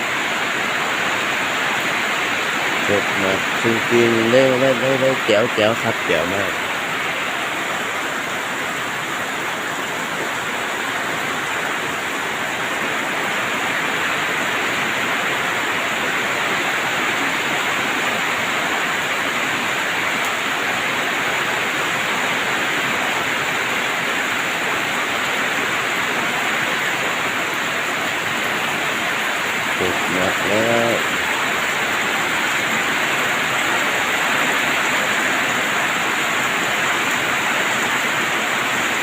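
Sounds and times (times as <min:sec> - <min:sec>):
steady rain hiss: 0:00.0 - 0:39.0.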